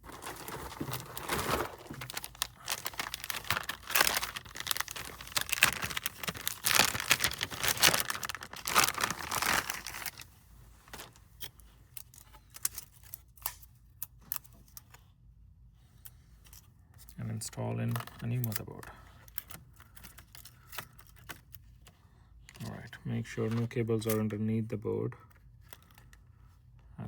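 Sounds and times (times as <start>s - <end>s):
plastic packaging crinkling: 0.0s - 10.3s, 10.9s - 11.2s.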